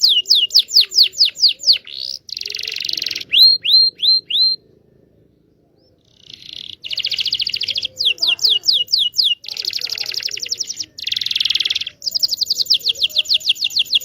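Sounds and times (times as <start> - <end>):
canary singing: 0.0 - 14.0.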